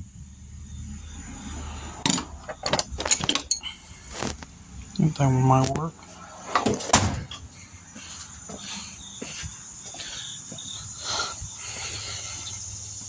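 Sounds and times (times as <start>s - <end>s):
heavy breathing: 3.4s - 4.4s, 7.2s - 13.0s.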